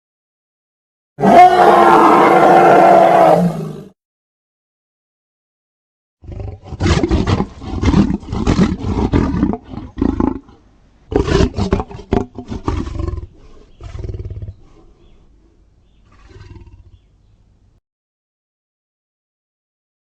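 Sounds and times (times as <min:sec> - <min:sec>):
gorilla roaring: 0:01.2 - 0:03.9, 0:06.2 - 0:14.6, 0:16.1 - 0:17.0.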